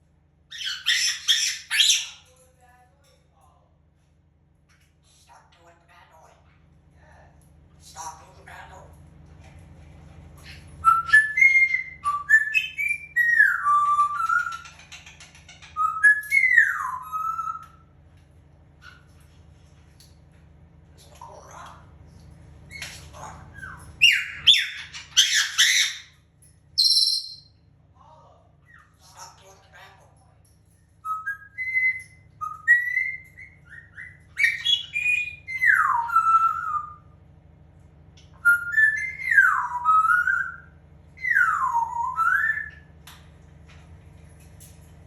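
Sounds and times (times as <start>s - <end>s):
parrot screeching: 0.5s - 2.3s, 22.7s - 26.2s, 31.1s - 37.1s
parrot whistling: 10.8s - 14.8s, 15.7s - 17.8s, 26.8s - 27.6s, 31.0s - 37.2s, 38.4s - 42.9s
parrot whistle-like call: 26.8s - 27.5s.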